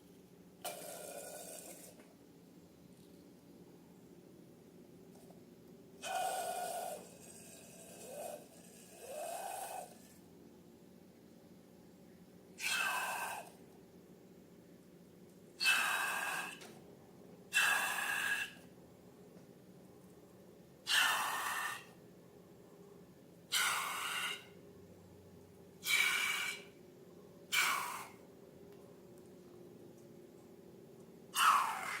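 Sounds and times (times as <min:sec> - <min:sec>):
faint low hum: 0:00.0 - 0:32.0
breathy bursts of rushing air: 0:25.8 - 0:26.8.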